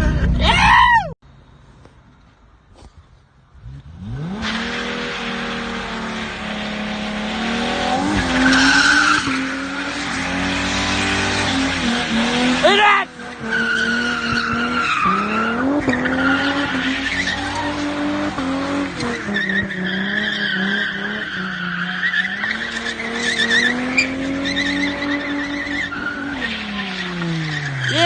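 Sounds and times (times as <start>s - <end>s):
car engine revving high: 3.6s - 28.0s
tyres squealing: 6.3s - 28.0s.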